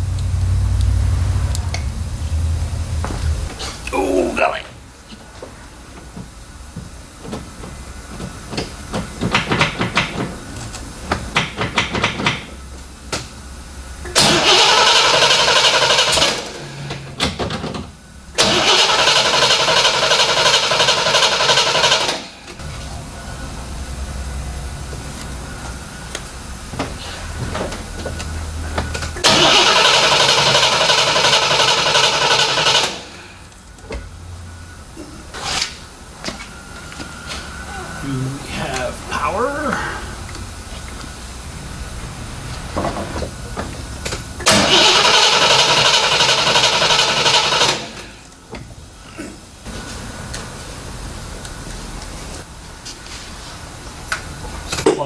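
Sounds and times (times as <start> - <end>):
engine starter cranking: 14.1 - 17.4, 18.4 - 22.4, 29.2 - 33.2, 44.4 - 48.1.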